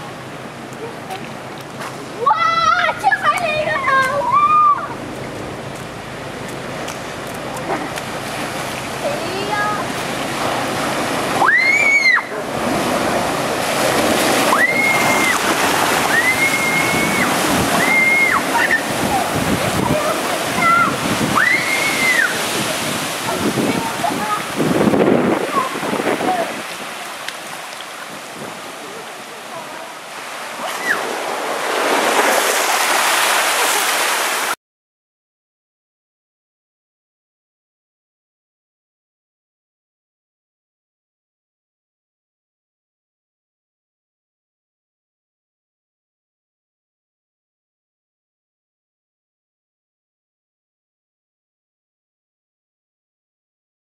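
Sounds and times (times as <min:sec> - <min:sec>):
sea surf churning and splashing: 0:00.0 - 0:34.6
wind: 0:00.0 - 0:34.6.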